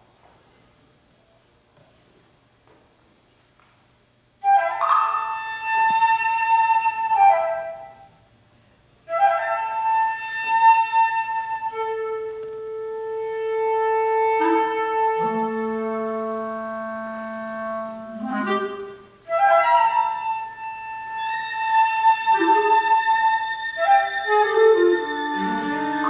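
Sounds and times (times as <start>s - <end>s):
flute playing: 4.4s - 8.3s, 9.1s - 26.0s.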